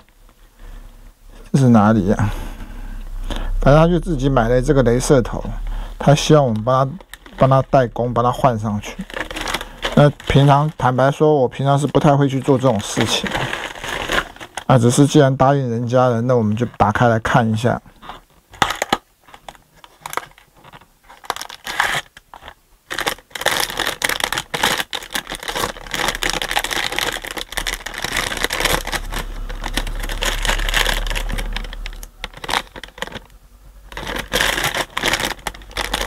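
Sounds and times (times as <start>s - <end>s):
low steady hum: 0.0s - 36.0s
rustling and clatter: 18.0s - 33.3s, 33.9s - 36.0s.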